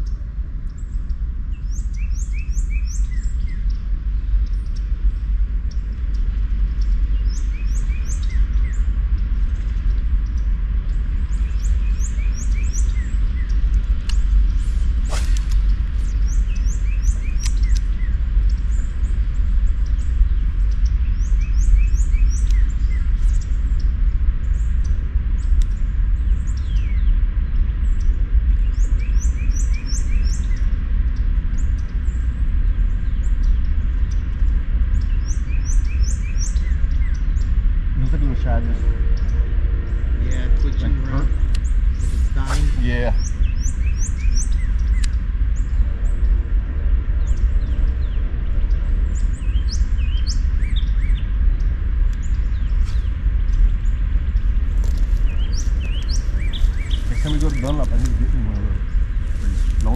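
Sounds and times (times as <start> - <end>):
small birds chirping: 0.0 - 59.9
steady low rumble: 0.0 - 59.9
sharp click: 15.1 - 15.8, 17.4 - 17.9, 44.9 - 45.2.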